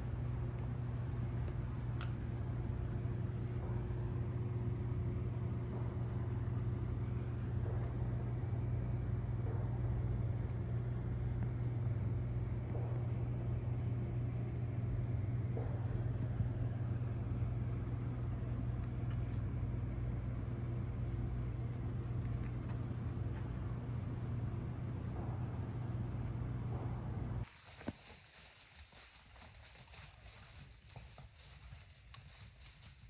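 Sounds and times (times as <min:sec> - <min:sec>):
motor vehicle low drone: 0:19.4 - 0:27.4.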